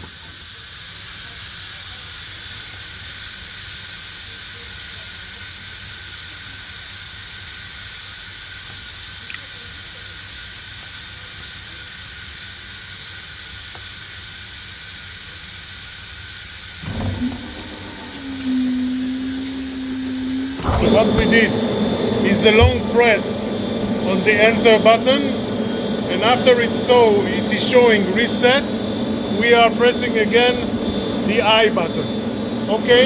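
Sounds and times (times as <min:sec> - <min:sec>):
compressor motor starting: 0:16.7 - 0:33.0
air hissing: 0:16.8 - 0:33.0.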